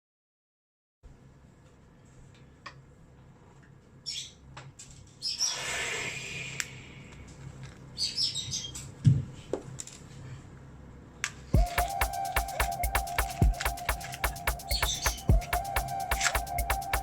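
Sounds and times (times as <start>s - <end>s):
small birds chirping: 14.6s - 15.3s.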